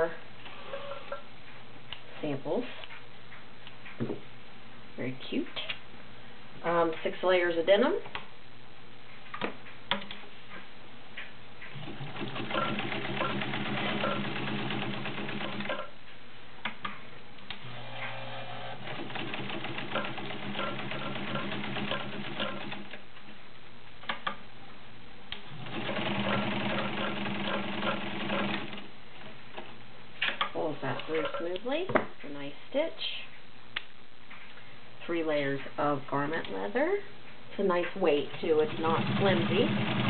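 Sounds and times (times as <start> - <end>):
sewing machine stitching: 11.7 - 15.9, 17.7 - 23.0, 25.5 - 28.9, 38.3 - 40.0.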